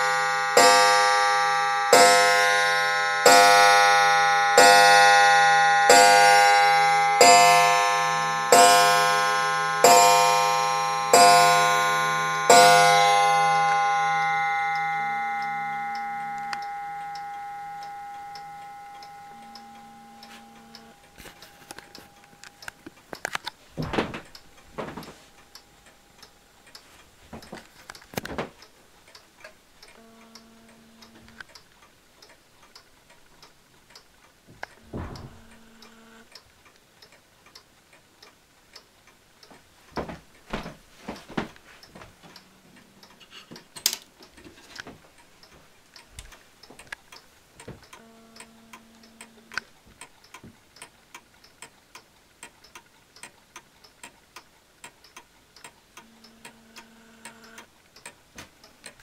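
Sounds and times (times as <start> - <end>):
clock bell ringing: 0.0 - 22.8
clock ticking: 0.0 - 59.0
louder knocks: 34.9 - 35.5.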